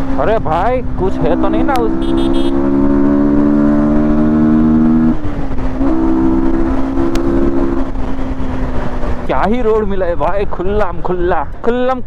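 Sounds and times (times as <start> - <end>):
motorcycle engine at high revs: 0.0 - 9.6.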